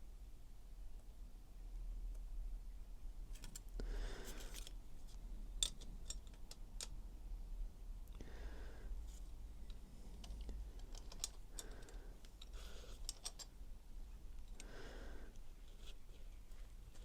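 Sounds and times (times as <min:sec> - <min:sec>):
metallic clicks of hand tools: 0:05.6 - 0:07.0, 0:09.7 - 0:13.5.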